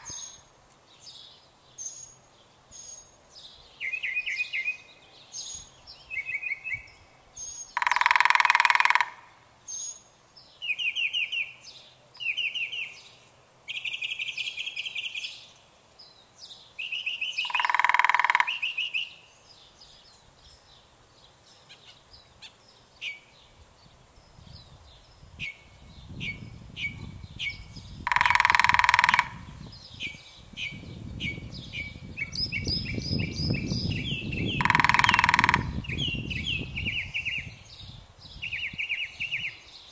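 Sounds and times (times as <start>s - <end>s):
birds trilling and chirping: 0.0s - 39.9s
loud harsh bird call: 27.5s - 29.6s, 34.2s - 37.4s.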